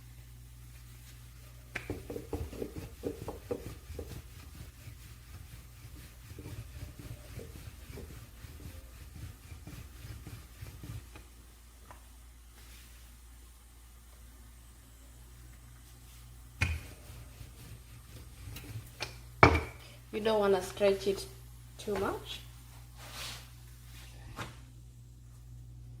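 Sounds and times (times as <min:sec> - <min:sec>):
rolling pin rubbing dough: 0:00.5 - 0:11.5, 0:16.0 - 0:19.3
rolling pin knocking on board: 0:01.8 - 0:04.3, 0:16.6 - 0:16.9, 0:19.4 - 0:19.8.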